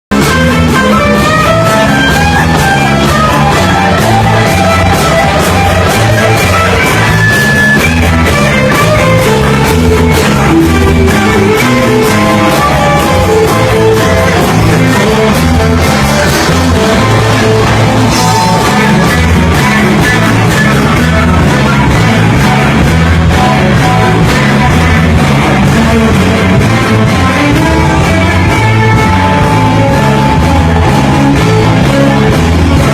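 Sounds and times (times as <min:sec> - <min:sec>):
bass guitar: 0:00.1 - 0:32.9
drum kit: 0:00.1 - 0:32.9
electric guitar: 0:00.1 - 0:32.9.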